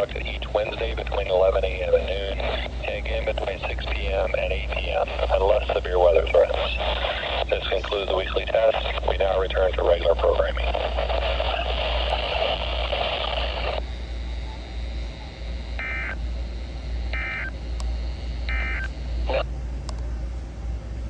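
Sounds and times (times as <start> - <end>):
noisy radio broadcast audio: 0.0 - 21.0
radio click: 6.4 - 13.8, 17.7 - 20.0.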